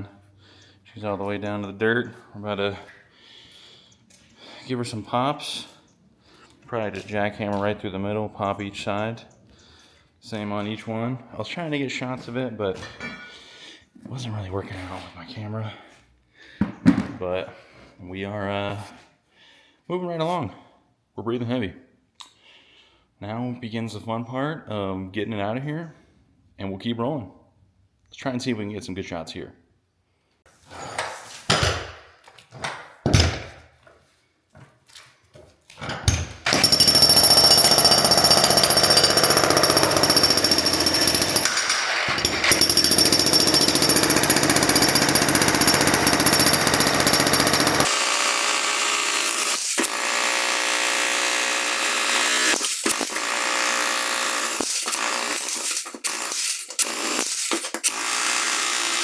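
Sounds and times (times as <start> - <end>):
jackhammer breaking concrete: 36.5 - 59.0.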